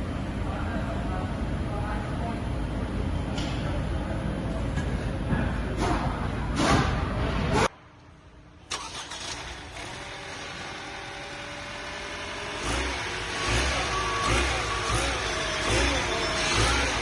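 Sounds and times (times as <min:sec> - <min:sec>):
car engine starting and running: 0:08.6 - 0:17.0.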